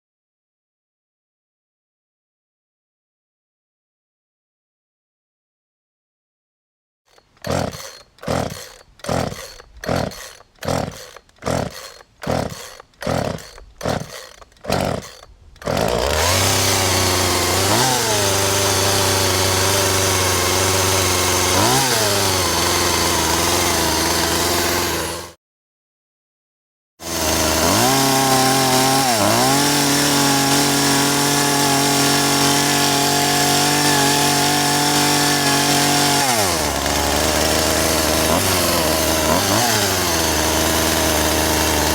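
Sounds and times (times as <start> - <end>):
starter cord tugs: 7.1 - 25.3, 27.2 - 41.9
chainsaw engine running: 7.1 - 25.4, 27.0 - 41.9.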